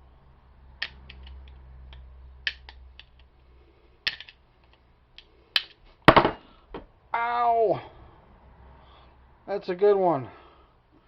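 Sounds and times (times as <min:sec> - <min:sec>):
small sharp metal clicks: 0:00.8 - 0:03.3.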